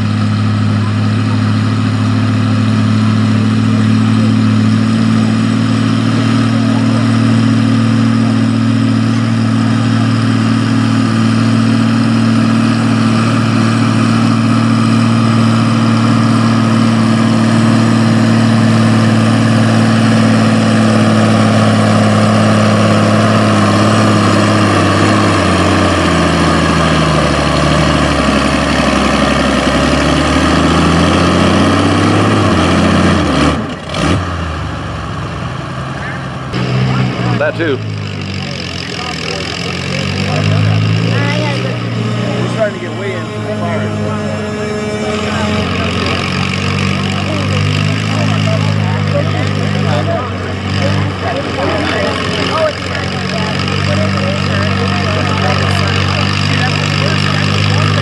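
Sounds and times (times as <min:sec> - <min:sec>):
tractor engine straining: 0:00.0 - 0:58.0.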